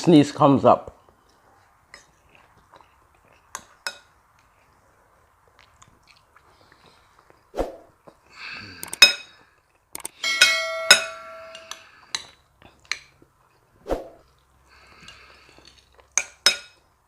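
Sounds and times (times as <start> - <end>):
cutlery clinking on plates: 10.1 - 13.1, 15.0 - 16.8.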